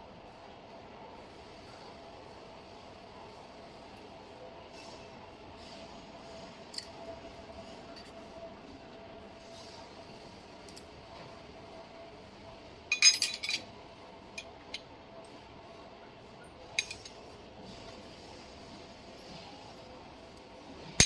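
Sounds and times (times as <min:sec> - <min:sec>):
metal pieces clinking: 0:12.9 - 0:13.6.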